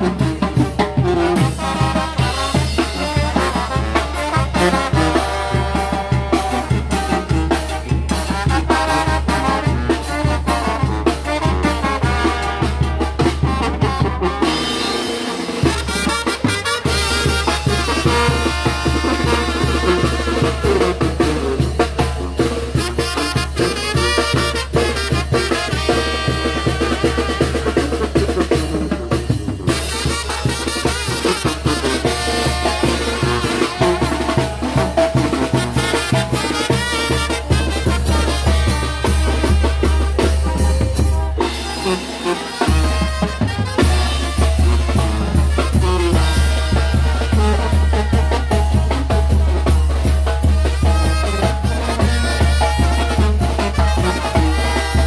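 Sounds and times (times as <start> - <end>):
brass band playing: 0.0 - 55.0
drums in a steady beat: 0.0 - 55.0
tuba bass: 0.0 - 55.0.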